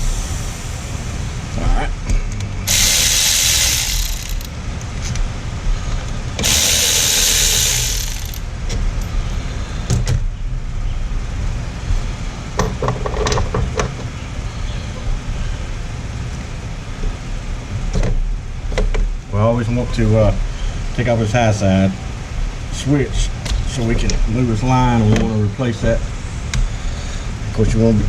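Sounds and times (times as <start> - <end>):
steady low rumble: 0.0 - 12.6
refrigerant hissing from line: 2.7 - 4.5.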